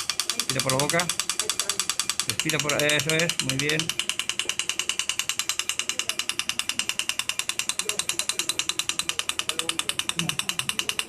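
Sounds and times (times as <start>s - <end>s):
medical laser pulse clicks: 0.0s - 11.0s.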